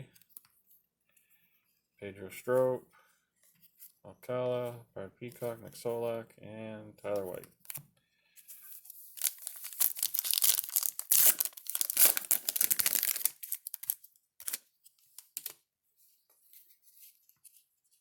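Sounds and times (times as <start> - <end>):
wrapper tearing and crinkling: 8.9 - 15.6.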